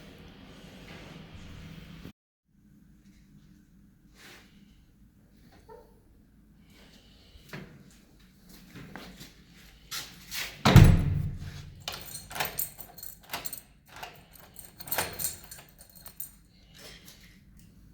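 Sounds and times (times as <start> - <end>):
heavy door thud: 10.7 - 12.3
metallic clicks and rattles: 10.8 - 16.4.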